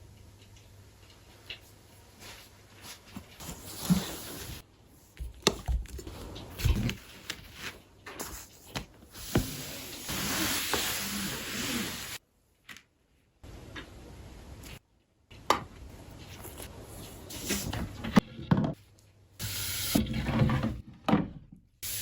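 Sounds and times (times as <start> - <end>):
steady hiss: 9.2 - 12.2.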